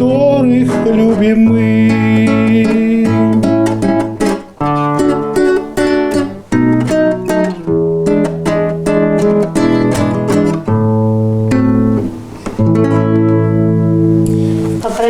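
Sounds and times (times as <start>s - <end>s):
plucked and strummed chords: 0.0s - 15.0s.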